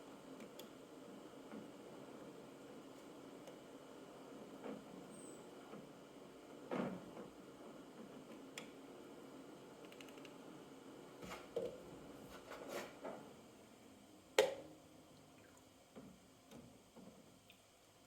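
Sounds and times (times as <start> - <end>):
small clicks: 9.8 - 10.4.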